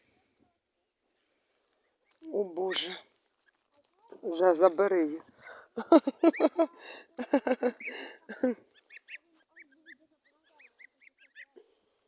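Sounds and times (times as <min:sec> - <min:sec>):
short high goose calls: 0:08.7 - 0:11.6.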